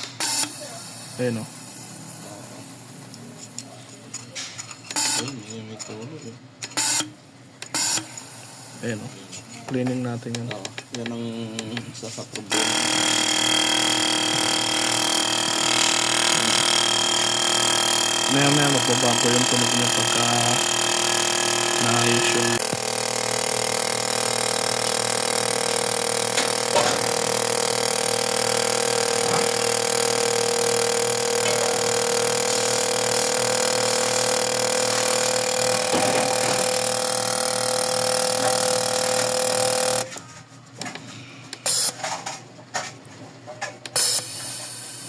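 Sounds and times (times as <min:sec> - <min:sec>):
machine humming and hissing: 0:11.3 - 0:40.2.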